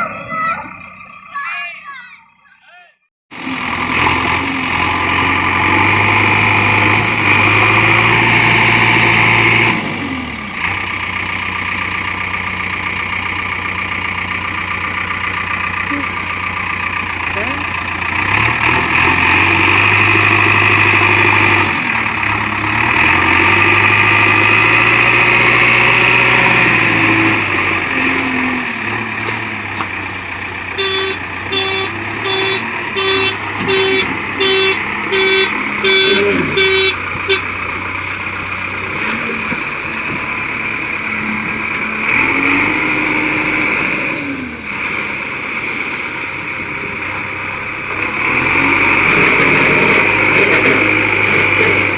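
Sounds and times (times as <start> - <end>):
diesel engine revving: 0.0 - 1.5, 3.3 - 51.9
beeps: 30.8 - 37.4.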